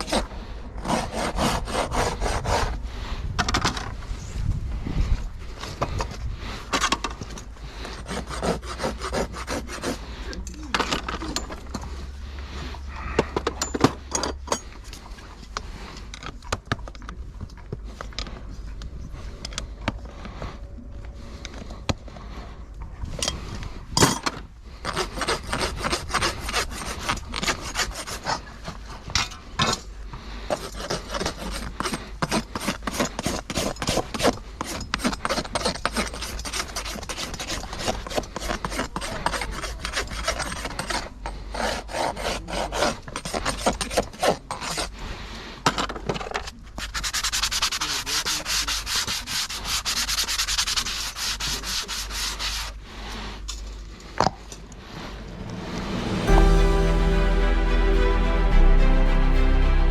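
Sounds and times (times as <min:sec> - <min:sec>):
rasp filing hoof: 0:00.0 - 0:02.8, 0:05.8 - 0:12.0, 0:24.8 - 0:29.8, 0:30.5 - 0:53.5.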